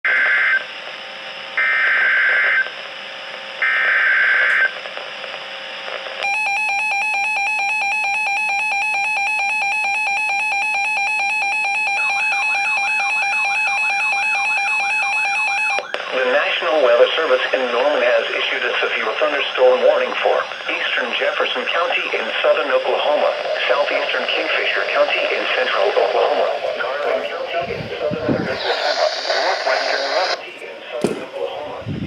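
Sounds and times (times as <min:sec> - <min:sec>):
radio hiss: 0:00.1 - 0:06.2, 0:15.7 - 0:32.0
long steady alert tone: 0:06.2 - 0:30.5
digital data bursts: 0:11.0 - 0:30.6.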